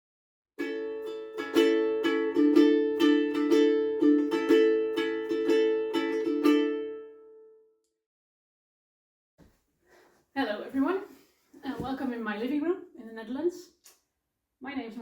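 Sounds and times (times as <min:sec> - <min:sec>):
ukulele strumming: 0:00.6 - 0:07.5.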